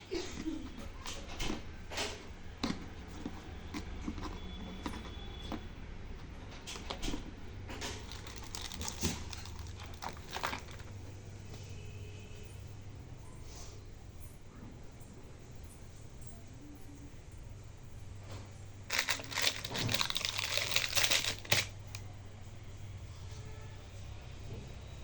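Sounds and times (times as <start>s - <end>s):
packaging crinkling and rustling: 7.8s - 11.1s, 18.8s - 22.0s.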